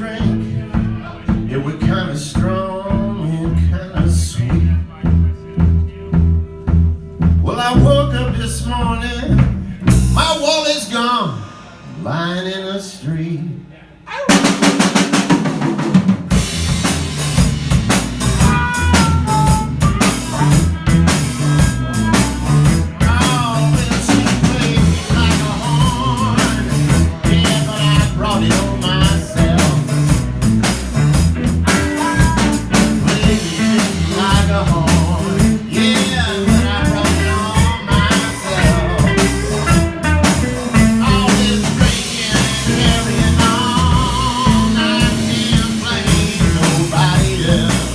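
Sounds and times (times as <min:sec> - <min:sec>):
drum rimshots: 0:00.0 - 0:10.6, 0:14.1 - 0:47.9
blues band playing: 0:00.0 - 0:12.7, 0:14.1 - 0:47.9
lead guitar bent notes: 0:16.3 - 0:47.8.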